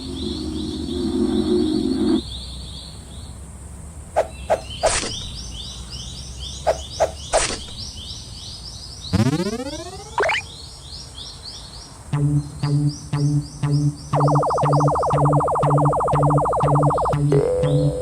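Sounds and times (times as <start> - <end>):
high rapid chirping: 9.1 - 10.5, 12.1 - 18.0
cartoon pops: 9.2 - 10.4, 12.2 - 18.0.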